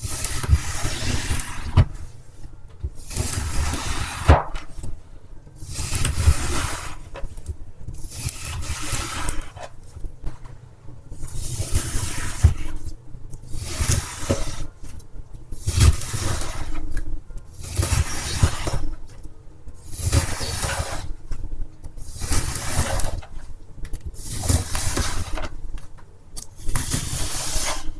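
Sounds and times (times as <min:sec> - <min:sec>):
wet floral foam being cut: 0:00.0 - 0:02.0, 0:03.0 - 0:04.8, 0:05.6 - 0:07.2, 0:08.0 - 0:09.8, 0:11.3 - 0:12.9, 0:13.5 - 0:14.8, 0:15.6 - 0:16.8, 0:17.6 - 0:18.9, 0:19.8 - 0:21.2, 0:22.0 - 0:23.3, 0:24.2 - 0:25.5, 0:26.6 - 0:27.9.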